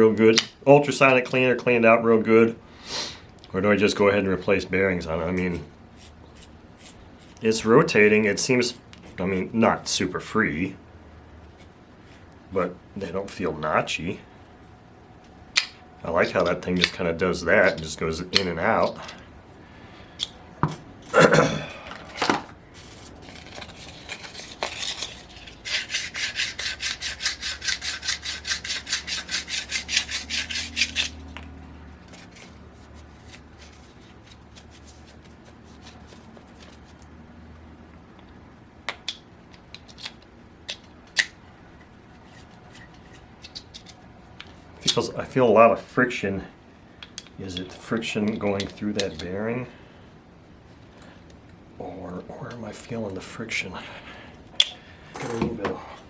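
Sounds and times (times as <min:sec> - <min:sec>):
fast rasping metal rub: 0:23.7 - 0:31.2.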